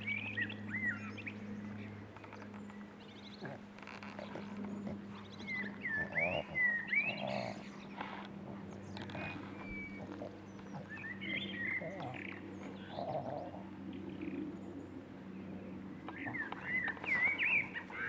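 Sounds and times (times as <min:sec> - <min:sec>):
steady low hum: 0:00.0 - 0:18.0
puppies whining and squeaking: 0:08.9 - 0:11.2.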